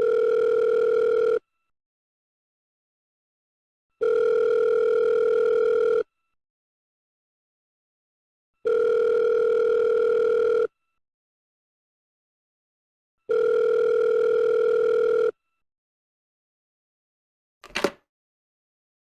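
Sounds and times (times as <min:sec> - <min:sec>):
telephone ringback tone: 0:00.0 - 0:01.4, 0:04.0 - 0:06.1, 0:08.6 - 0:10.7, 0:13.3 - 0:15.4.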